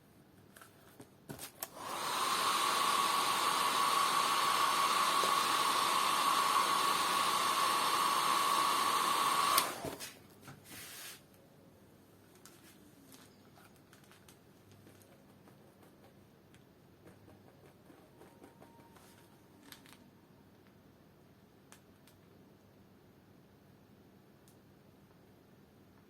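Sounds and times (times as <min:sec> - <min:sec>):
hot-air blower whine: 0:01.6 - 0:10.1.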